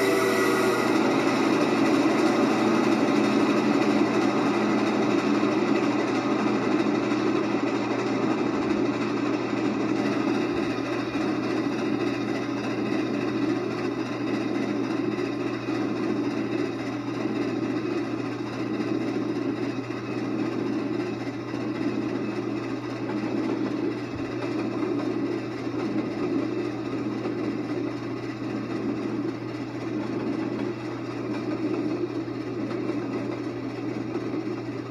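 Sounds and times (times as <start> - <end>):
low hum: 0.0 - 10.8
passenger train rolling by: 0.0 - 34.9.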